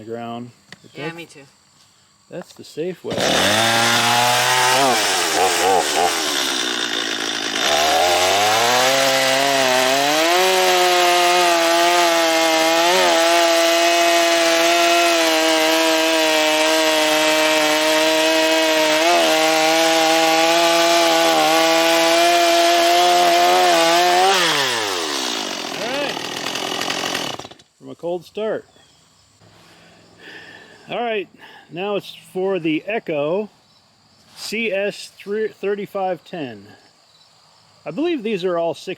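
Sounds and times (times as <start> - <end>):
chainsaw cutting wood: 3.1 - 27.7.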